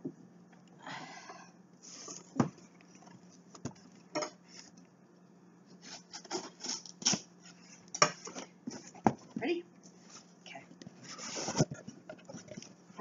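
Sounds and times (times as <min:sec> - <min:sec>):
cardboard rubbing and scraping: 0:11.0 - 0:12.6.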